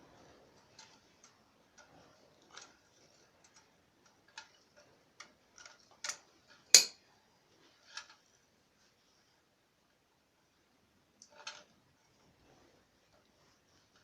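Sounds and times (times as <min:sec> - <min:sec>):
metal tools clicking and tapping: 0:06.0 - 0:07.0.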